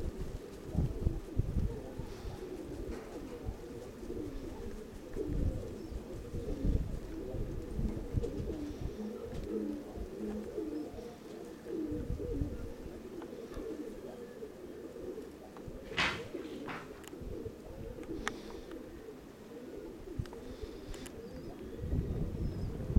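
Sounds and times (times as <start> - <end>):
wind rumbling on microphone: 0.0 - 13.8, 15.7 - 18.9, 19.9 - 22.9
pigeons cooing: 0.0 - 22.9.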